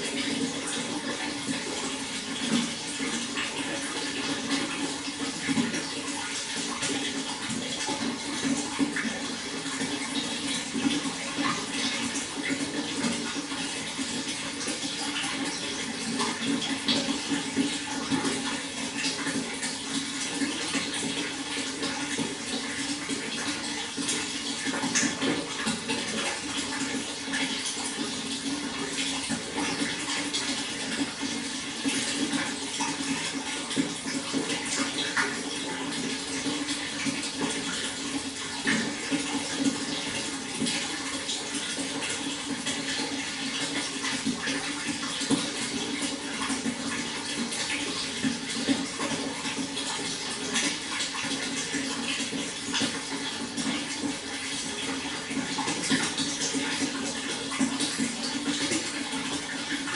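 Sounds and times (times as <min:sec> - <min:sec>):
water flowing and splashing: 0:00.0 - 0:59.9.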